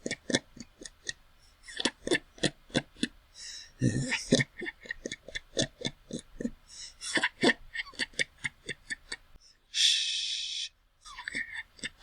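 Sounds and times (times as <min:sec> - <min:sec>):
person laughing quietly: 0:03.8 - 0:09.2, 0:10.4 - 0:12.0.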